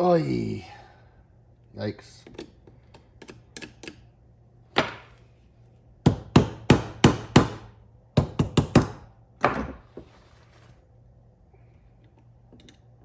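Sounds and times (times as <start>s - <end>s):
hammer strikes: 6.1s - 9.6s.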